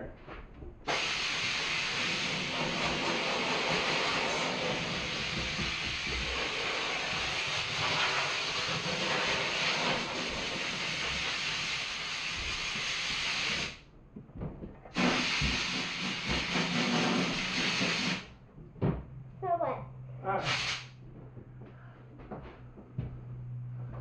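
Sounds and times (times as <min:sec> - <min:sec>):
air gun hissing: 0:00.9 - 0:13.8, 0:14.9 - 0:18.3, 0:20.4 - 0:21.0.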